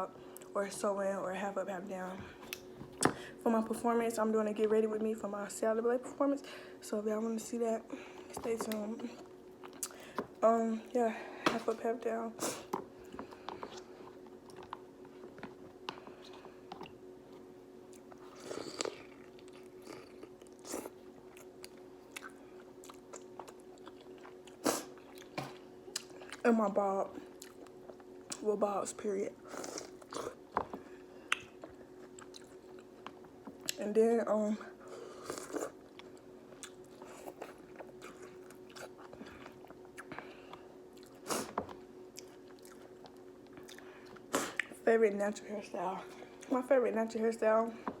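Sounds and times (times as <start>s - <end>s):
person chewing food: 8.1s - 10.3s, 12.5s - 26.4s, 27.2s - 28.4s, 29.5s - 33.8s, 34.9s - 44.8s.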